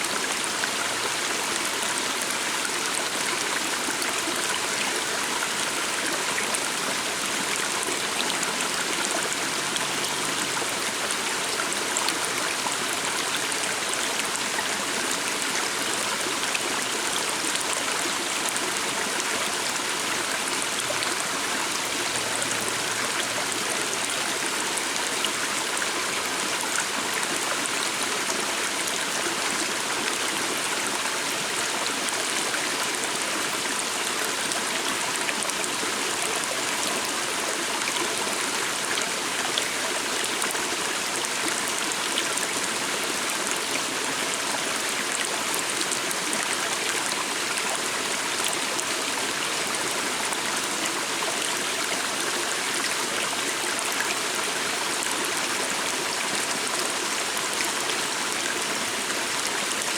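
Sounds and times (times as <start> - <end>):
stream flowing: 0.0 - 59.9.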